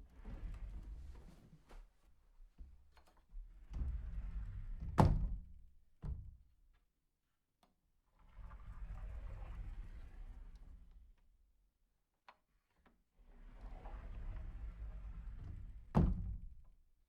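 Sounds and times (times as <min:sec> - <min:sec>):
sliding door rumbling on track: 0:08.4 - 0:10.8, 0:13.4 - 0:16.0.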